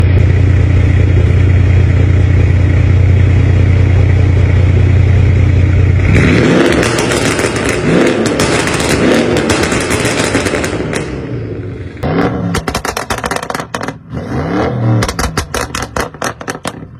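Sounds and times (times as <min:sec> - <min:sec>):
car engine revving: 0:00.0 - 0:16.9
exhaust crackling pops: 0:06.6 - 0:11.3, 0:12.5 - 0:14.0, 0:15.0 - 0:16.9.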